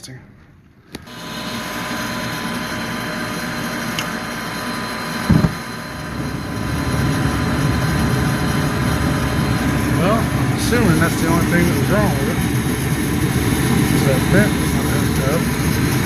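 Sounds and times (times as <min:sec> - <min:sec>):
furnace fan roar: 0:00.0 - 0:16.0
low thump: 0:05.3 - 0:05.6.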